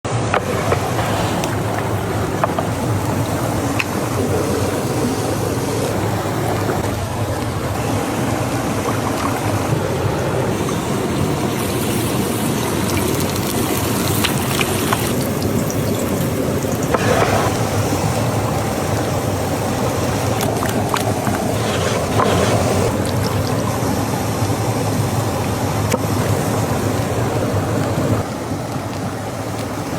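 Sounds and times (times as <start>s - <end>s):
chicken sizzling in hot oil: 10.5s - 18.9s.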